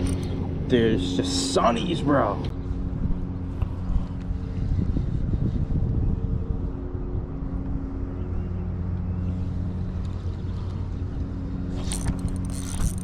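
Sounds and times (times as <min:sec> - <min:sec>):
low motor hum: 0:00.0 - 0:13.0.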